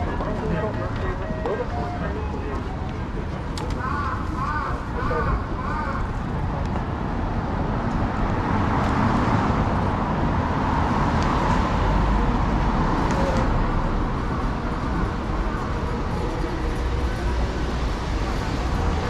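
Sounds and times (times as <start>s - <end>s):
road traffic rumble: 0.0s - 19.0s.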